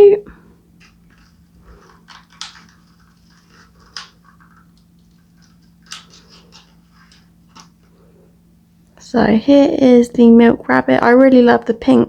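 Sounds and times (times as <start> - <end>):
faint low hum: 0.0 - 12.0
plastic toys clicking and rustling: 0.8 - 7.9.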